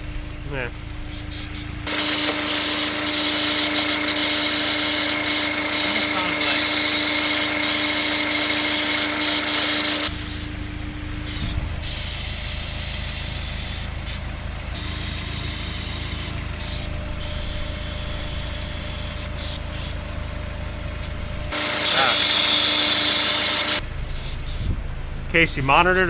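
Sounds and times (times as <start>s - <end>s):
high-pitched hiss: 21.6s - 23.8s.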